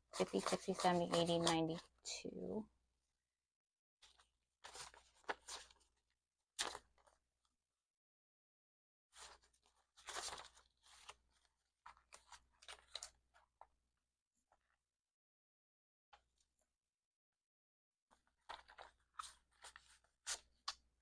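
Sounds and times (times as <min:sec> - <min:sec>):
paper bills rustling: 0:00.1 - 0:01.8, 0:04.1 - 0:05.9, 0:09.2 - 0:13.2, 0:18.2 - 0:20.9.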